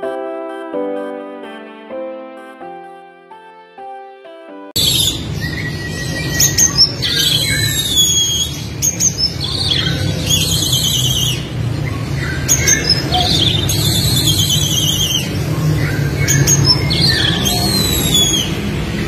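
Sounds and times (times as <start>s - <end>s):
bird singing: 4.8s - 19.0s.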